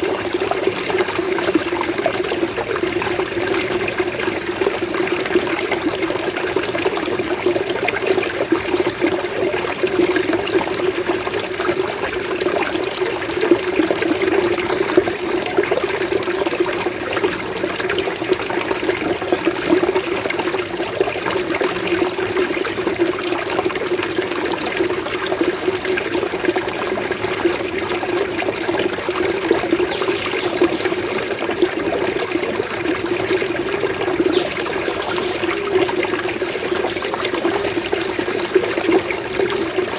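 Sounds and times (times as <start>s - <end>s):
running water burbling: 0.0s - 39.9s.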